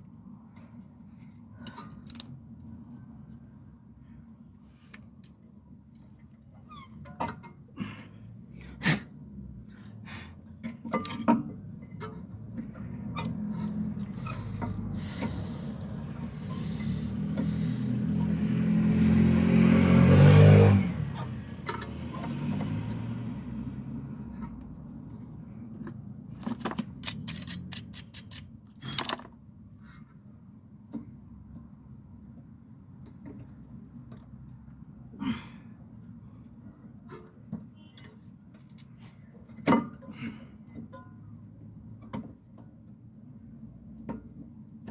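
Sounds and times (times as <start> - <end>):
ratchet clicks: 26.8 - 28.5.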